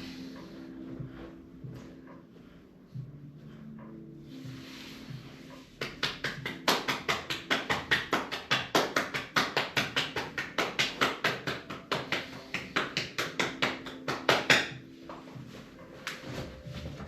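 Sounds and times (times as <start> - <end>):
hands slapping body: 5.8 - 14.8.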